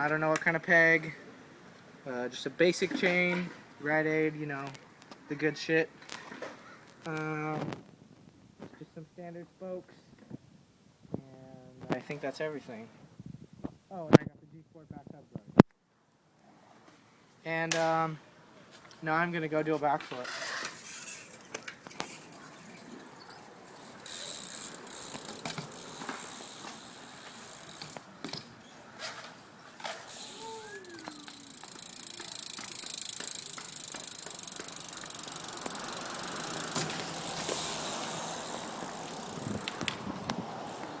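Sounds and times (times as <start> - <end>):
bike tyres rolling on concrete: 0.0 - 8.8, 17.6 - 41.0
bike hub ratchet clicking: 20.3 - 28.8, 29.8 - 40.1.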